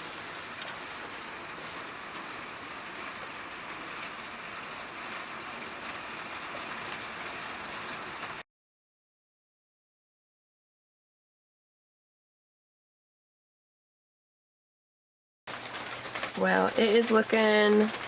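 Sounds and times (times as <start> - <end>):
faint rain pattering: 0.0 - 8.4, 15.5 - 18.0
rain hissing: 0.0 - 8.4, 15.5 - 18.0.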